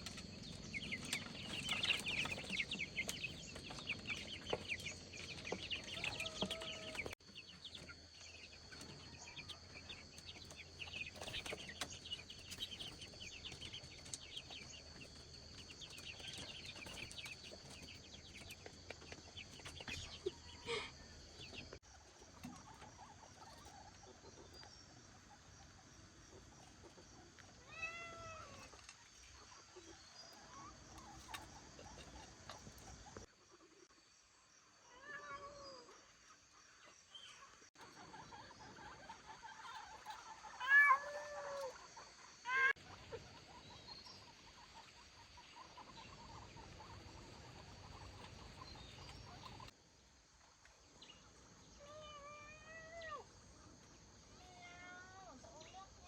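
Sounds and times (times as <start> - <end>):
chicks cheeping: 0.0 - 33.8, 35.2 - 49.8.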